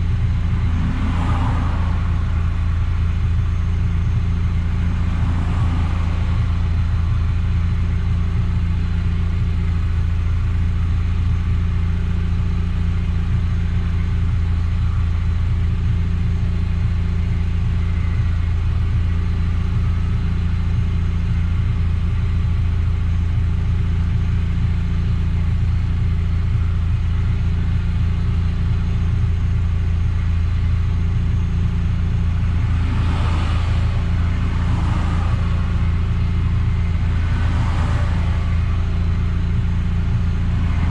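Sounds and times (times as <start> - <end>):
rushing noise: 0.0 - 7.4, 32.5 - 40.9
car engine and road noise: 0.0 - 40.9.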